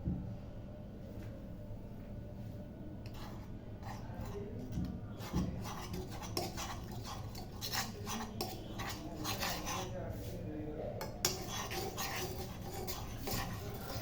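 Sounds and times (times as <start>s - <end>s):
utensil scraping and clinking cookware: 3.1s - 10.3s, 11.0s - 14.0s.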